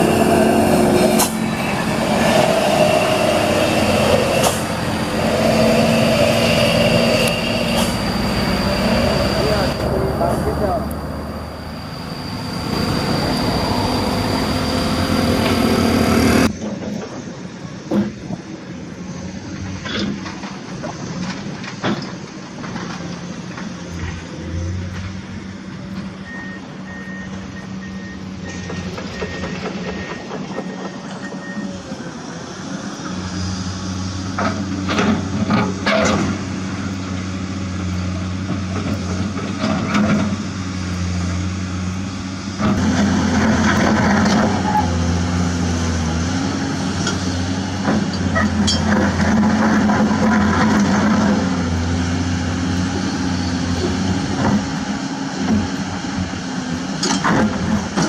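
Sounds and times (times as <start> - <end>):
dump truck engine running: 0.0 - 58.0
reversing beeper beeps: 2.8 - 16.5, 26.2 - 31.8.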